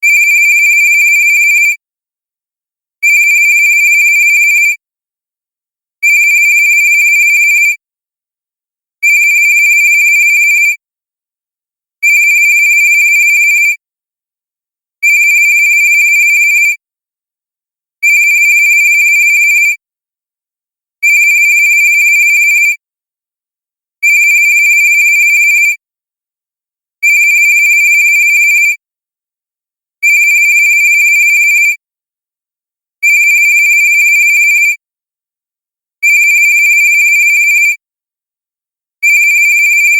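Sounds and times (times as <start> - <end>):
electronic phone ringtone: 0.2 - 1.8, 3.2 - 4.7, 6.2 - 7.8, 9.2 - 10.7, 27.2 - 28.7, 36.2 - 37.7.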